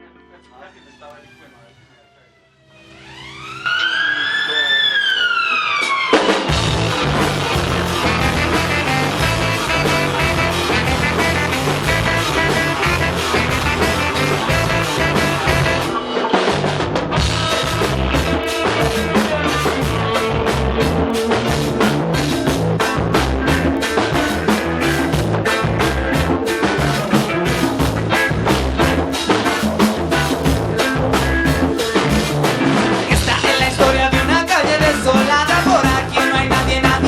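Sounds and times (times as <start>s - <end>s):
falling siren sound effect: 0.4s - 16.1s
reggae band playing: 2.8s - 37.0s.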